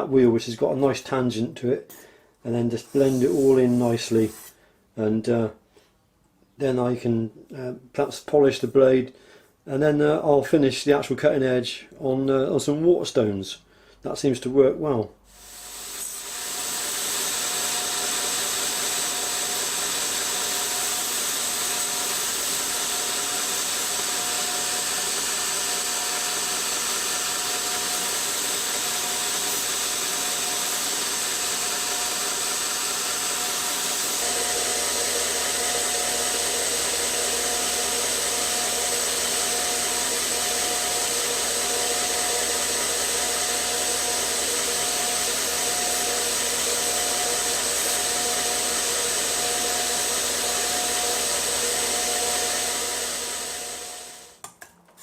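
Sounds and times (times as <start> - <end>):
belt grinder grinding metal: 2.6 - 4.6, 15.7 - 54.3.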